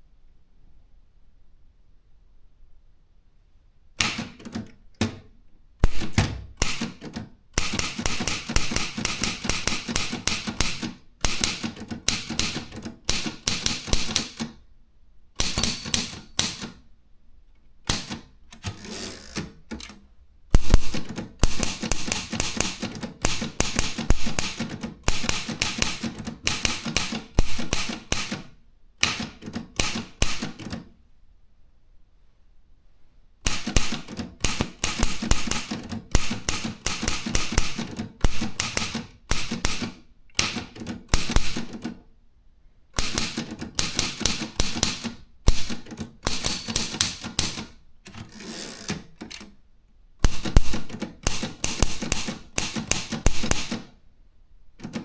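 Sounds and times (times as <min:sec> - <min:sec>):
manual typewriter typing: 0:04.0 - 0:14.6, 0:15.4 - 0:16.8, 0:17.9 - 0:20.0, 0:20.6 - 0:30.9, 0:33.5 - 0:42.0, 0:43.0 - 0:49.6, 0:50.2 - 0:53.9, 0:54.8 - 0:55.0.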